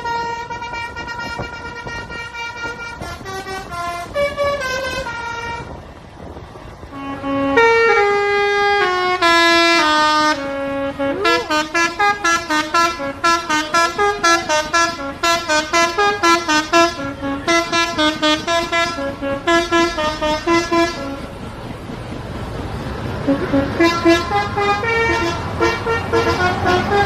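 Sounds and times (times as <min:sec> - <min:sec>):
bus multi-tone horn melody: 0:00.0 - 0:21.4, 0:23.2 - 0:27.0.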